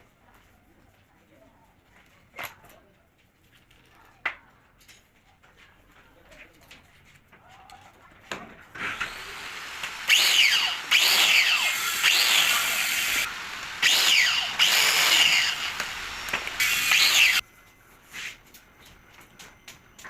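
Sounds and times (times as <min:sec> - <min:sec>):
power tool whining on metal: 0:08.8 - 0:17.4.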